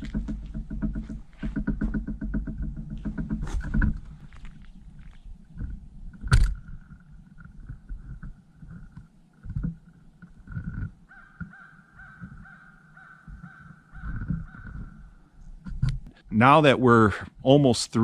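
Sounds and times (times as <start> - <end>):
low rumbling thumps: 0.0 - 11.1, 13.2 - 16.3
crows cawing: 11.1 - 15.3.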